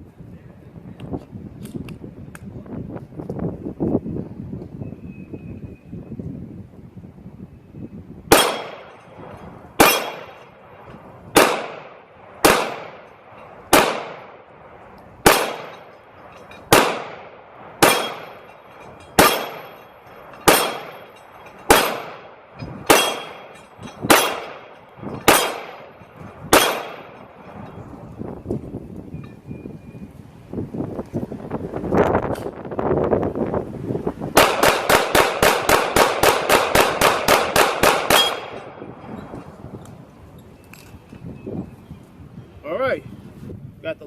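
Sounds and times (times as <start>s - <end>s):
pistol shots with echo: 8.3s - 14.5s, 15.2s - 16.0s, 16.7s - 18.6s, 19.2s - 27.5s, 34.4s - 38.9s.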